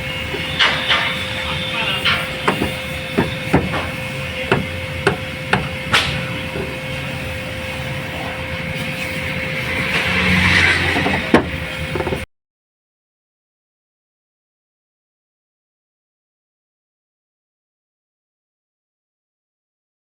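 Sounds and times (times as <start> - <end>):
machine hum: 0.0 - 12.3
hammer striking sheet metal: 0.3 - 6.7.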